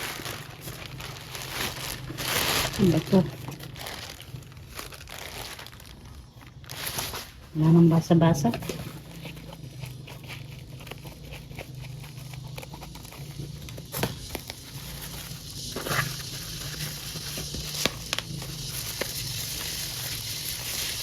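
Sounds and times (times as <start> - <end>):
packaging crinkling and clicking: 0.0 - 7.6, 8.4 - 21.0
low steady hum: 0.0 - 21.0.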